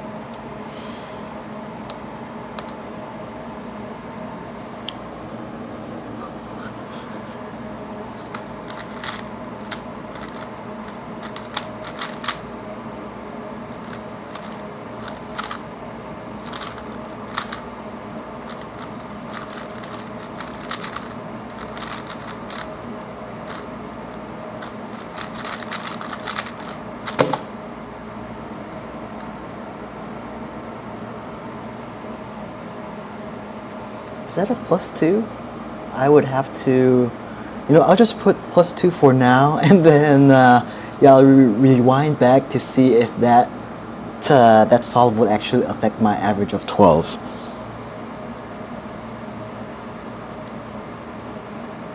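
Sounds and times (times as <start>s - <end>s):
air conditioner hum: 0.0s - 51.9s
puzzle cube plastic clicks: 8.2s - 12.6s, 13.7s - 17.7s, 18.4s - 27.5s
loud knock: 27.2s - 27.5s.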